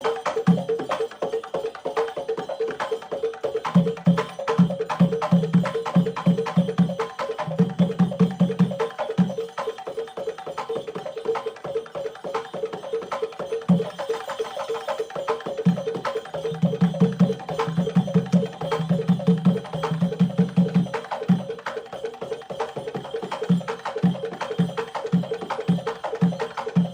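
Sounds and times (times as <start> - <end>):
quick low drum beats: 3.6 - 9.8, 15.4 - 26.9.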